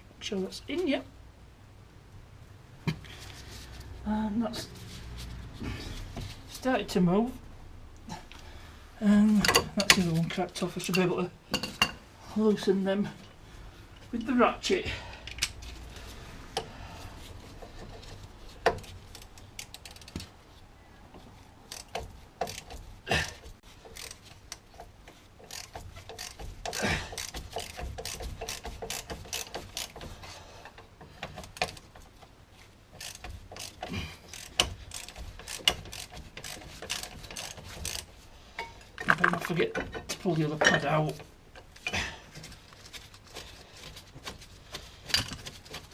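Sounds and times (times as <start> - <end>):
metal clicks and knocks: 21.7 - 41.9
socket ratchet clicking: 25.5 - 30.1, 33.0 - 38.1.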